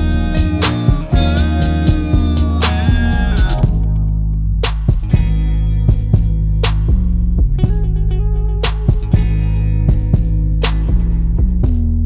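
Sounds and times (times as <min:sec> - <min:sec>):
bass: 0:00.0 - 0:12.0
steady beat: 0:00.0 - 0:12.0
plucked guitar: 0:07.6 - 0:11.4.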